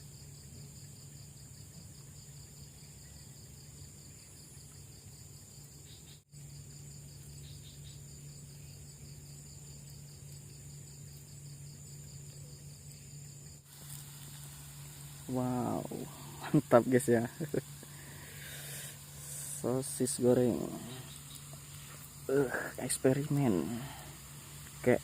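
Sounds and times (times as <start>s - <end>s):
crickets chirping: 0.0s - 25.0s
low steady hum: 6.4s - 25.0s.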